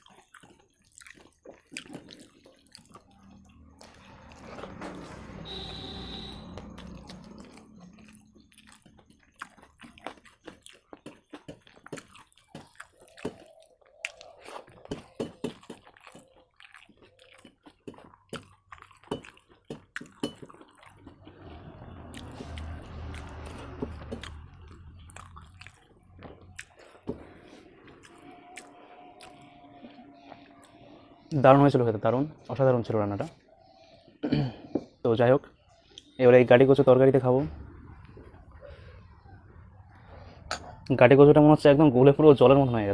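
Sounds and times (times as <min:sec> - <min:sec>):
wet chewing mouth sounds: 0:00.0 - 0:31.4
lip smacks and clicks: 0:06.6 - 0:17.9.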